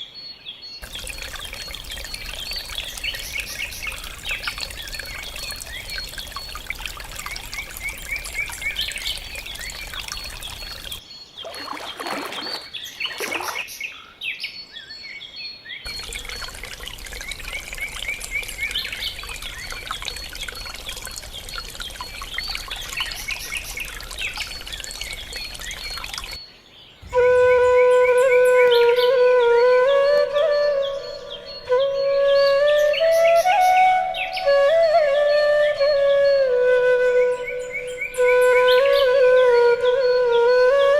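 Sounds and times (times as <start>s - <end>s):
birds chirping: 0.6s - 40.9s
trickle of running water: 0.8s - 13.7s, 15.9s - 26.4s.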